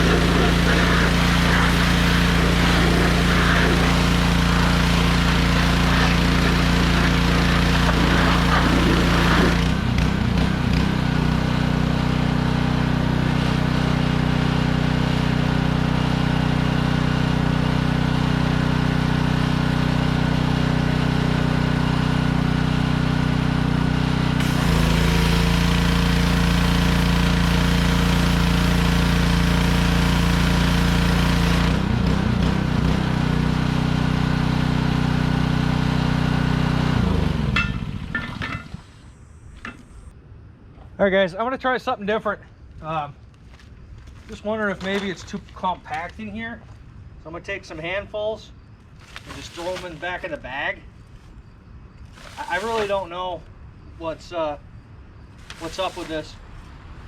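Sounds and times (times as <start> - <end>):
high-pressure spray hissing: 0.0 - 9.6, 24.4 - 31.6
pressure washer engine running: 0.0 - 39.0, 52.2 - 53.0, 55.5 - 56.3.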